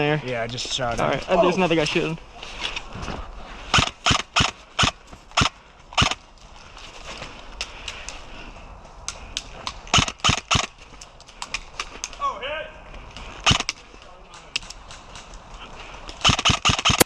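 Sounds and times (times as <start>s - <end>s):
airsoft rifle shots: 3.7s - 6.2s, 9.9s - 10.7s, 13.4s - 13.7s, 16.2s - 17.0s.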